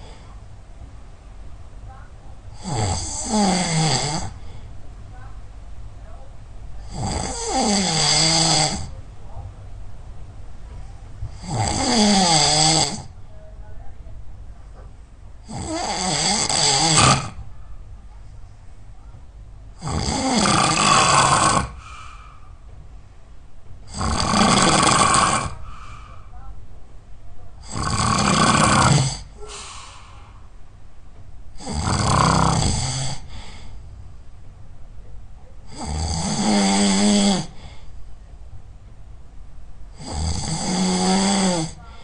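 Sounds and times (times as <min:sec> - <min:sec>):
person snoring loudly: 0:02.6 - 0:04.4, 0:06.9 - 0:08.9, 0:11.4 - 0:13.1, 0:15.5 - 0:17.4, 0:19.8 - 0:21.9, 0:23.9 - 0:26.0, 0:27.6 - 0:29.7, 0:31.6 - 0:33.3, 0:35.7 - 0:37.6, 0:40.0 - 0:41.8.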